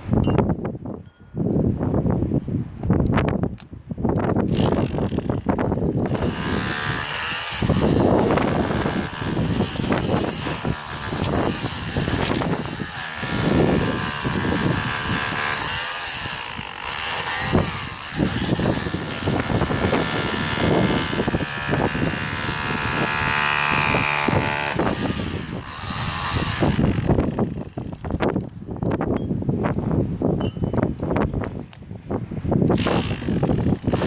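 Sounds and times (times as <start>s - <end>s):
motor running: 4.5s - 28.1s.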